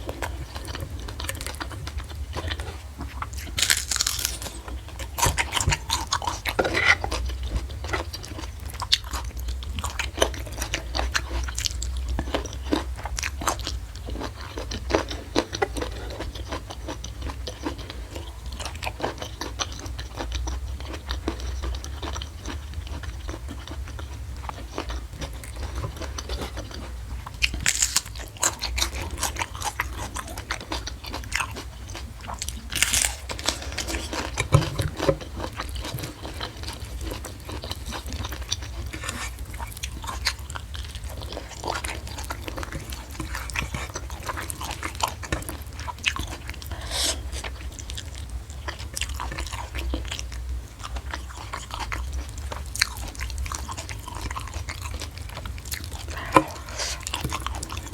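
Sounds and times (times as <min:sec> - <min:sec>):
crunchy chewing: 0:00.0 - 0:57.9
low steady hum: 0:00.0 - 0:57.9.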